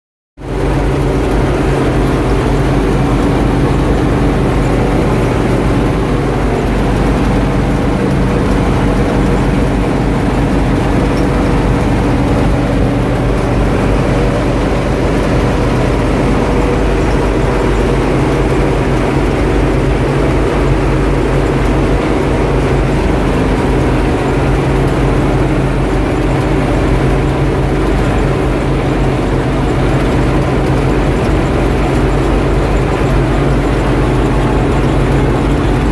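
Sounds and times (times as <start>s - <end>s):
combine harvester engine drone: 0.4s - 35.9s.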